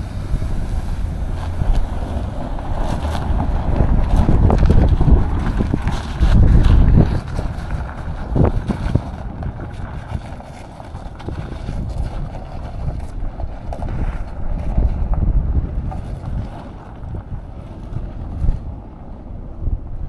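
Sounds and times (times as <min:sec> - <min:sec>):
atv engine running: 0:00.0 - 0:19.8
wind buffeting microphone: 0:00.0 - 0:20.0.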